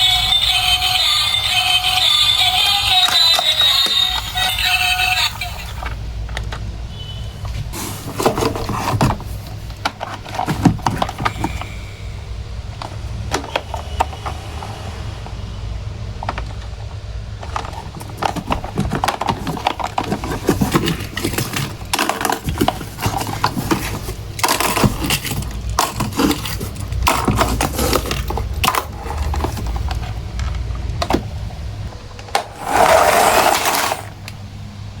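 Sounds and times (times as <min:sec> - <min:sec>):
plastic toys clicking and clattering: 0:00.0 - 0:06.7, 0:07.5 - 0:11.8, 0:12.8 - 0:14.3, 0:16.2 - 0:31.3, 0:31.9 - 0:34.4
packaging rustling: 0:07.7 - 0:11.6, 0:17.5 - 0:30.3, 0:32.6 - 0:34.2.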